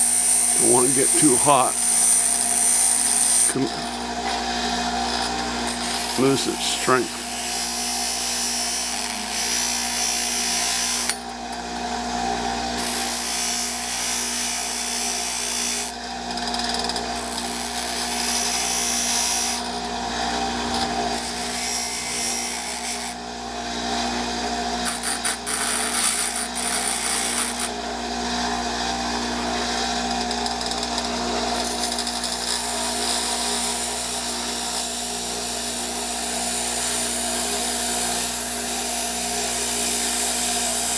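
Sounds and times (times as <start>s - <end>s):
grinding wheel on metal: 0.0s - 11.2s, 12.8s - 19.7s, 20.5s - 23.2s, 24.8s - 27.8s, 30.0s - 40.9s
grinder motor hum: 0.0s - 40.9s.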